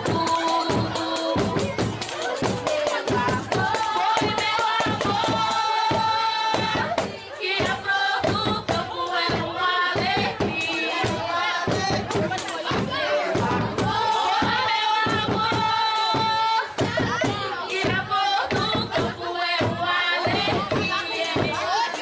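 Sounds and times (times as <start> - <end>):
person singing: 0.0 - 7.0
fast percussion beats: 0.0 - 22.0.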